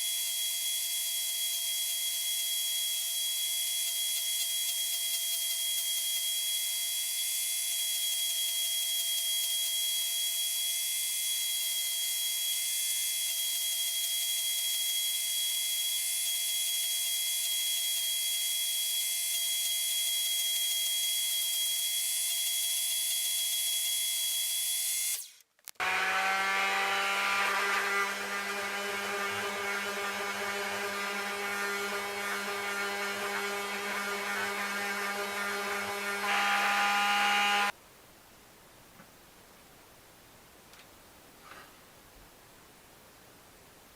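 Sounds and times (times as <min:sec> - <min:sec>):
power tool humming low: 0:24.8 - 0:37.7
power tool whining: 0:24.8 - 0:37.7.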